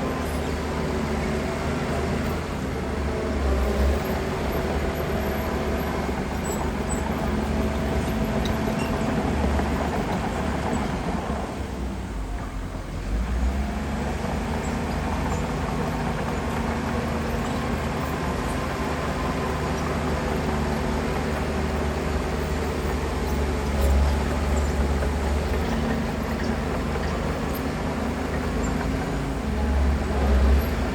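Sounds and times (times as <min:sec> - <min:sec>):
heavy diesel engine rumbling: 0:00.0 - 0:30.9.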